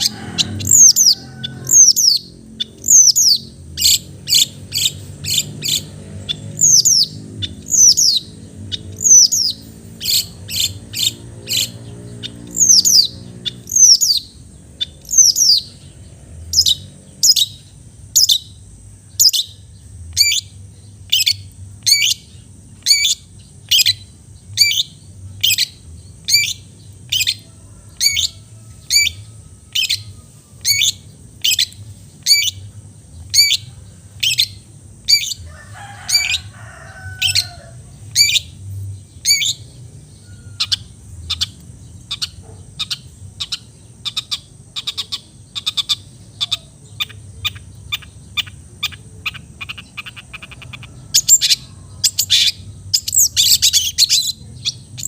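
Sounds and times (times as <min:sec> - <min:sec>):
shrike calling: 0:00.0 - 0:55.0.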